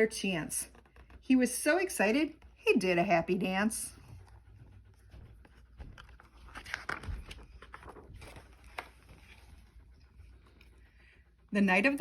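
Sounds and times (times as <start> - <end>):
paper pages rustling: 5.4 - 10.7.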